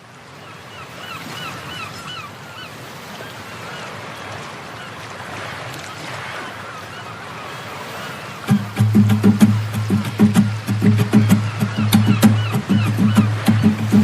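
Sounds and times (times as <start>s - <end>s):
birds calling: 0.4s - 14.0s
steady rushing noise: 8.5s - 14.0s.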